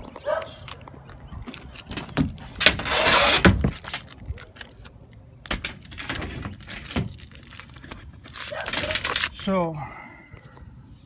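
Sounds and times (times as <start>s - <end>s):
metal panel rattling and scraping: 1.8s - 4.1s, 5.5s - 9.3s.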